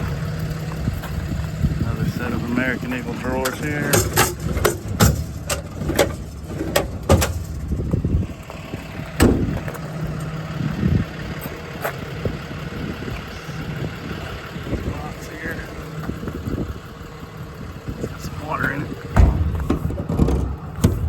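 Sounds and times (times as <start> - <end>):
diesel engine idling: 0.0 - 21.0
metal drawers opening and shutting: 3.2 - 7.8, 19.2 - 21.0.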